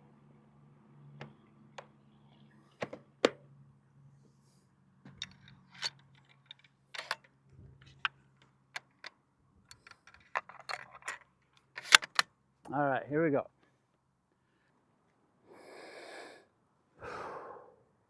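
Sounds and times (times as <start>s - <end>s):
rifle gear clicks and knocks: 5.1s - 8.1s, 9.7s - 12.2s.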